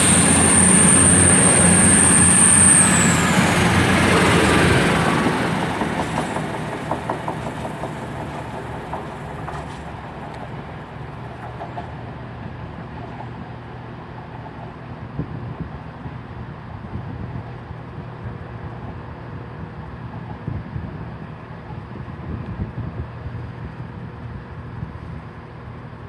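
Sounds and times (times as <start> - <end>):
train wheels clicking over rail joints: 0.0 - 15.0
diesel train pulling away: 0.0 - 26.0.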